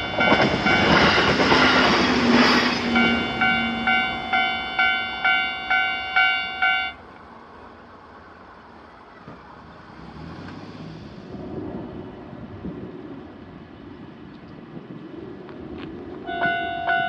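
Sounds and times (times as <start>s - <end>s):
level crossing bell clanging: 0.0s - 1.3s, 2.8s - 7.0s, 16.3s - 17.0s
road vehicle engine: 0.0s - 17.0s
steady outdoor hum: 0.0s - 17.0s.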